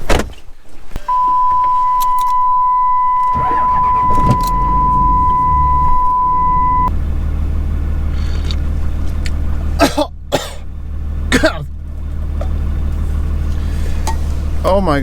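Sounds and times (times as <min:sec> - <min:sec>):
high electronic warning tone: 0:01.1 - 0:06.9
vehicle engine cranking and idling: 0:01.1 - 0:15.0
click: 0:01.6 - 0:02.4.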